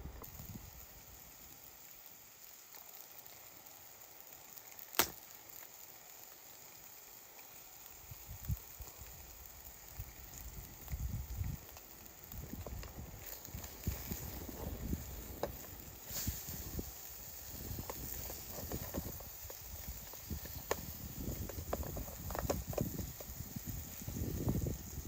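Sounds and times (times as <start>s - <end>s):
faint outdoor hiss: 0.0s - 25.0s
sharp crack: 4.8s - 5.4s.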